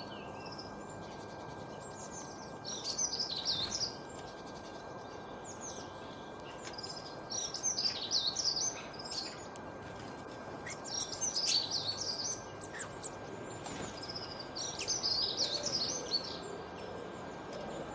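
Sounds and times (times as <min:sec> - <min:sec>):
steady background hiss: 0:00.0 - 0:17.9
songbird warbling: 0:10.6 - 0:13.2.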